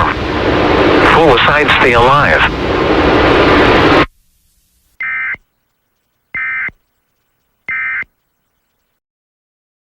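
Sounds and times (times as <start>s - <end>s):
shrill electronic data chirps: 5.0s - 9.0s.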